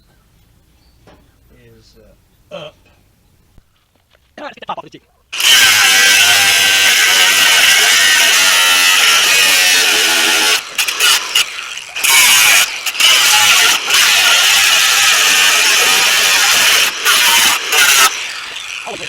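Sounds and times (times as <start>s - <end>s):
cut-off tool cutting steel: 5.4s - 19.0s.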